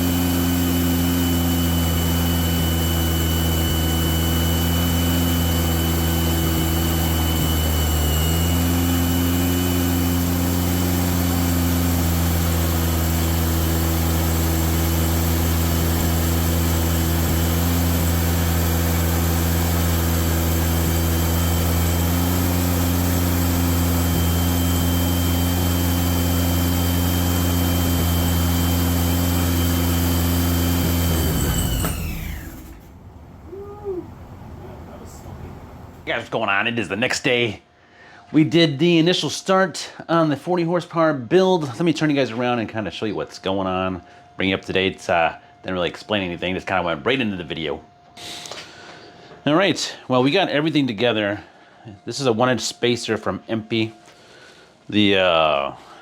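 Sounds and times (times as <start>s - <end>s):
air-cooled engine running: 0.0s - 38.2s.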